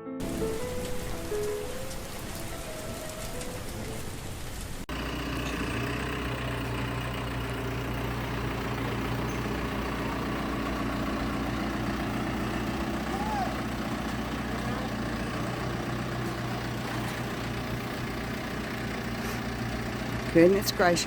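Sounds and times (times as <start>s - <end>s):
steady hiss like rain: 0.2s - 5.2s
heavy engine idling: 0.2s - 21.0s.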